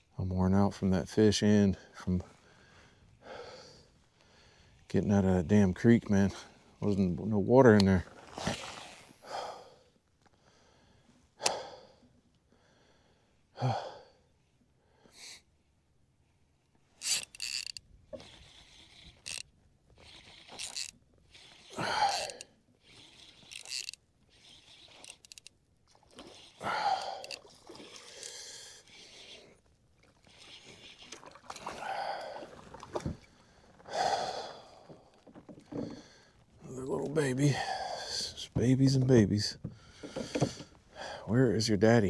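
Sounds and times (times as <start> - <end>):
man gasping for breath: 33.4 - 35.1.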